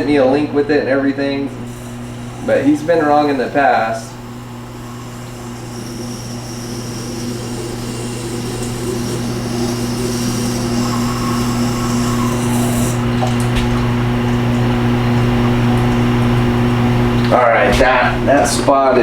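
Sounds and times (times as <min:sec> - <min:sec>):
sharpening machine motor hum: 0:00.0 - 0:17.4
blade grinding on stone: 0:01.6 - 0:13.2.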